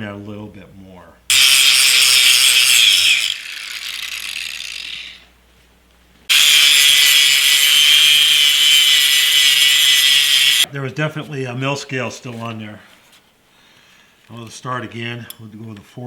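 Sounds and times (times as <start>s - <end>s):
power grinder grinding steel: 1.3s - 5.3s, 6.3s - 10.7s.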